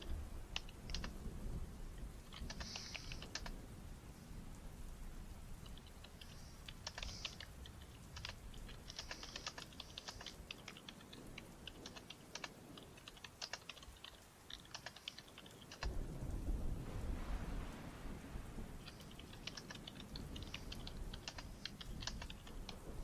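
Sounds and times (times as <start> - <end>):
low rumble of thunder: 0.0 - 10.2, 15.8 - 23.0
typing on a keyboard: 0.5 - 1.2, 2.3 - 3.6, 5.6 - 15.9, 18.8 - 23.0.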